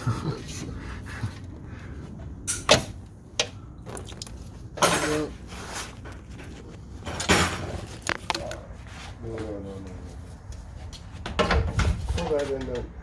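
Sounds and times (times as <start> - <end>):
scraping rustles: 4.4 - 12.8.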